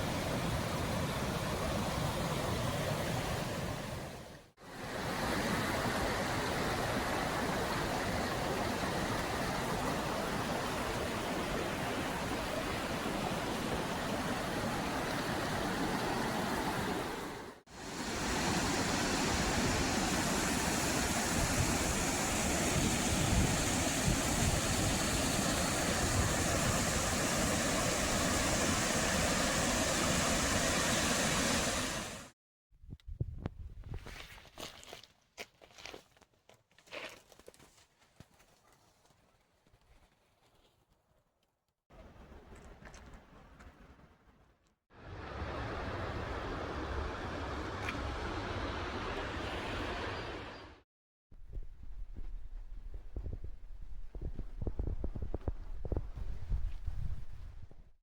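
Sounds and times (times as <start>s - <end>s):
waterfall rushing: 17.8s - 32.3s, 45.0s - 50.5s.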